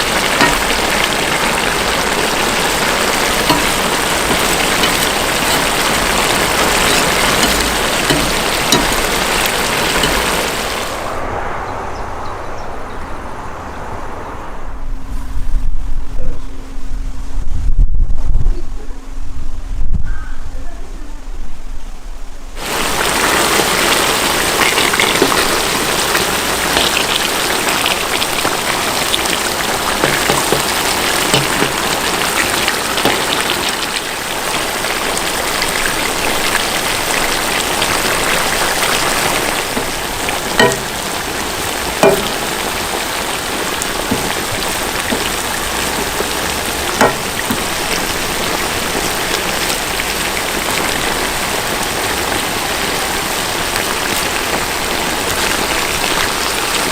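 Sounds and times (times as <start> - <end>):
food sizzling in a pot: 0.0 - 10.9, 22.6 - 52.4.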